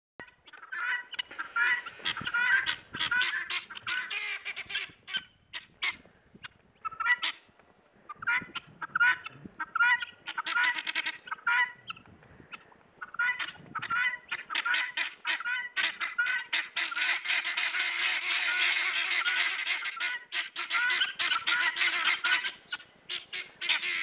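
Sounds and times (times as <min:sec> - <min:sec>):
harsh bird calls: 0:00.3 - 0:06.1.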